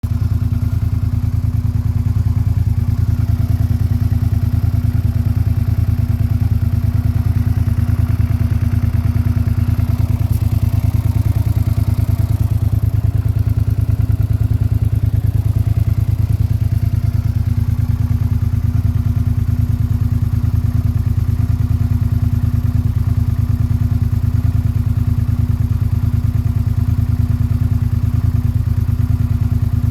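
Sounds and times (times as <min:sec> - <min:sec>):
motorcycle engine running steadily: 0:00.0 - 0:29.9.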